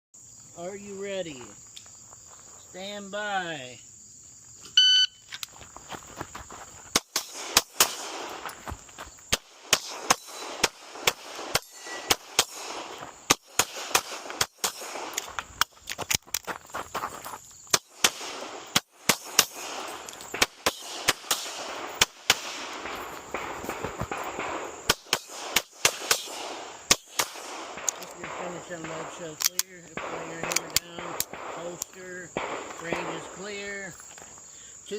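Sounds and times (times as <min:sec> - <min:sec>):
shot timer beep: 0:04.8 - 0:05.2
handgun firing shots: 0:07.0 - 0:08.4, 0:09.3 - 0:15.3, 0:17.7 - 0:33.3.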